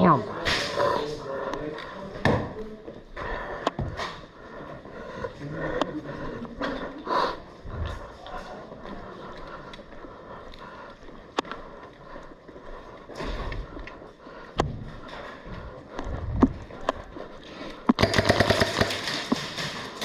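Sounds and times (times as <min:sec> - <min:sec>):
loud crack: 0:18.0 - 0:20.0.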